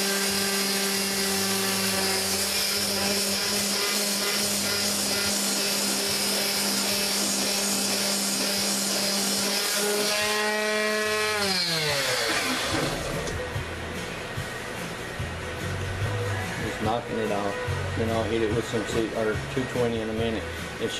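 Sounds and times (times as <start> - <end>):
electric sander on steel blade: 0.0 - 13.1.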